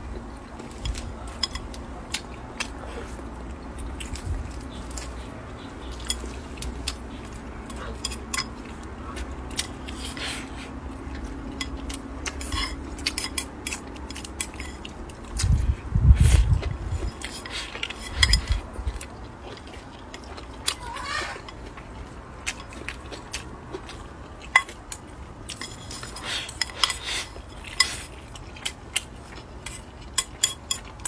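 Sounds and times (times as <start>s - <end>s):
person chewing: 0.0s - 31.0s
utensils clicking against a bowl: 11.2s - 15.5s, 17.0s - 21.8s, 29.6s - 31.0s.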